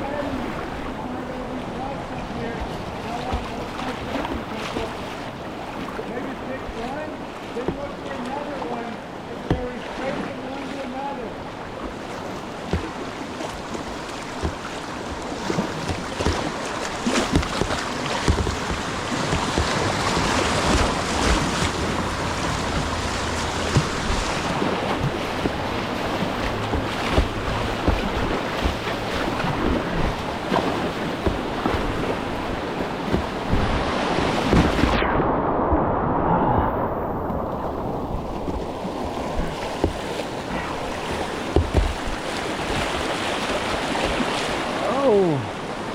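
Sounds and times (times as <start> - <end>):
rushing whitewater: 0.0 - 45.9
water splashing: 0.0 - 45.9.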